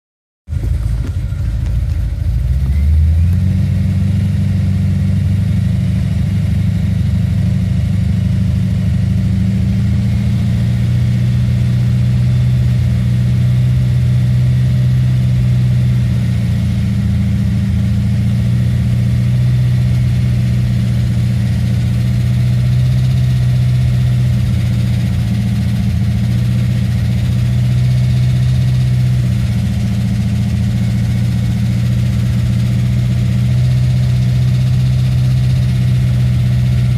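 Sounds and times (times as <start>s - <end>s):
car engine idling: 0.5s - 36.9s.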